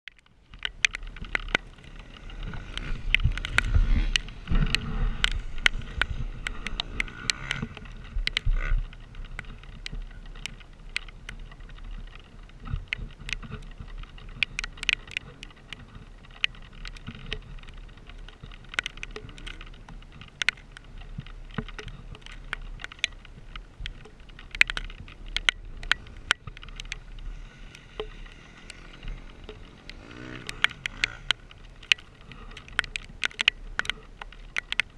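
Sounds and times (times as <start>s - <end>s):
sharp clicks and knocks: 0.1s - 34.9s
dirt bike engine running: 0.8s - 10.9s, 25.1s - 33.6s.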